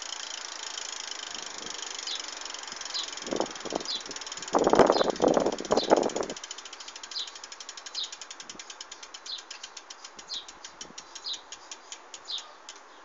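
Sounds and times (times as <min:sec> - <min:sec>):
bicycle hub ratchet clicking: 0:00.0 - 0:13.0.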